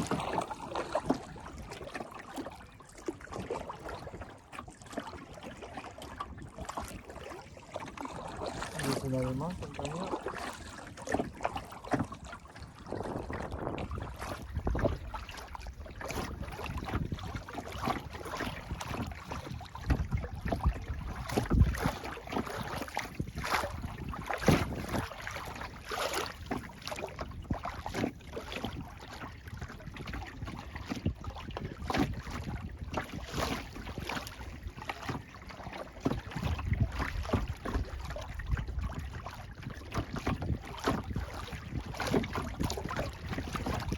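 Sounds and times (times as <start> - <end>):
paddle strokes splashing water: 0.0 - 43.9
wind buffeting microphone: 8.0 - 25.6, 26.8 - 35.2, 36.0 - 43.9.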